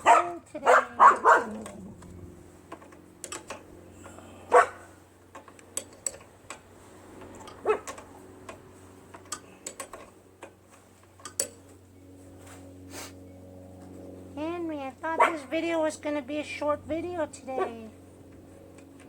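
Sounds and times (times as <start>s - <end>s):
dog barking: 0.0s - 1.6s, 4.5s - 4.9s, 7.6s - 7.9s, 15.2s - 15.4s, 17.6s - 17.8s.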